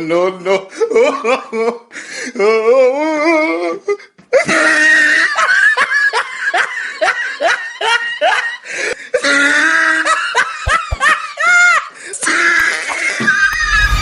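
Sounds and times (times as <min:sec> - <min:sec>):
person laughing hard: 0:04.4 - 0:14.0.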